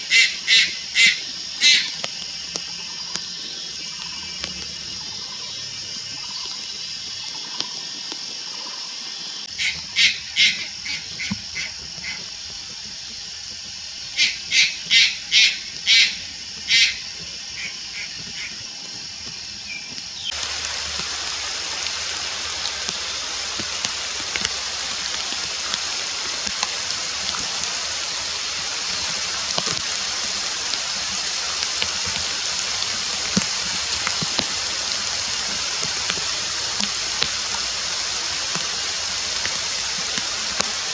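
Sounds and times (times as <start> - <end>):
heron giving sharp calls: 0.0 - 2.0, 9.5 - 12.2, 14.1 - 18.7
rushing water: 0.0 - 40.9.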